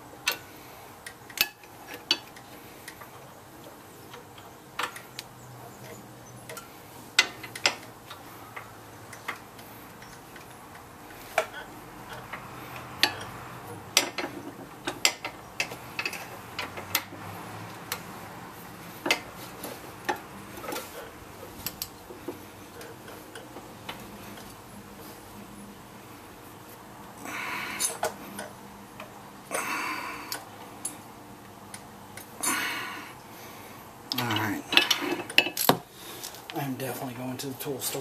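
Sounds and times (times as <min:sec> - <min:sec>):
hand tools clicking on metal: 0:04.1 - 0:18.1.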